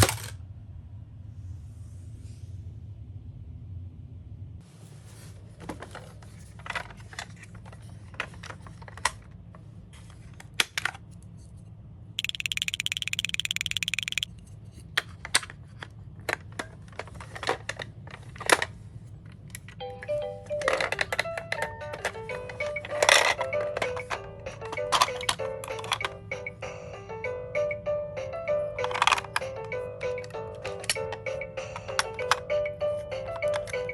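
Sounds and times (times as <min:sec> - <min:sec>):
toy cars clicking and clacking: 0:00.0 - 0:00.4, 0:05.7 - 0:09.3, 0:12.2 - 0:26.6, 0:28.5 - 0:33.9.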